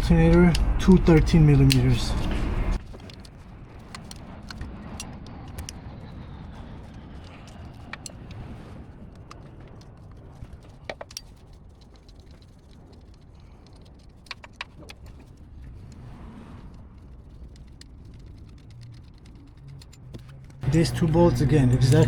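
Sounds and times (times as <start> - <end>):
low steady hum: 0.0 - 22.0
metallic tool clicks and clinks: 0.1 - 5.8, 6.8 - 8.4, 10.8 - 15.2.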